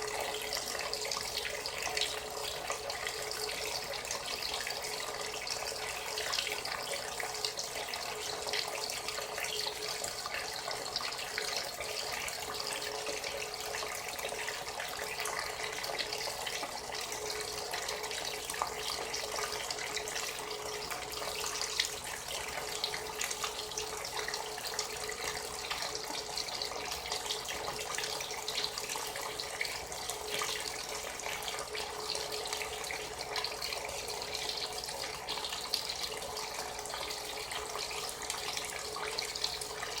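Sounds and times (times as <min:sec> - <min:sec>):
water pouring into washing machine: 0:00.0 - 0:40.0.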